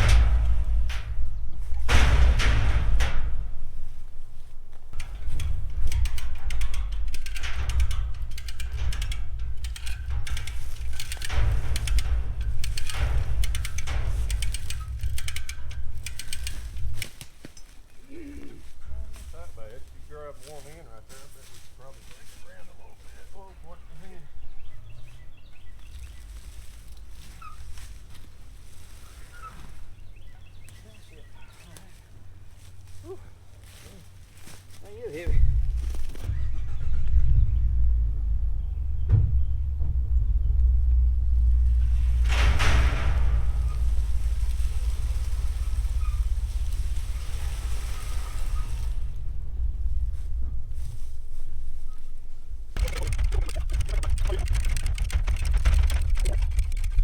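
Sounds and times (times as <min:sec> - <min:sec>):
low rumble: 0:00.0 - 0:17.2, 0:35.3 - 0:57.0
ratchet strap clicking: 0:05.0 - 0:17.6, 0:52.8 - 0:57.0.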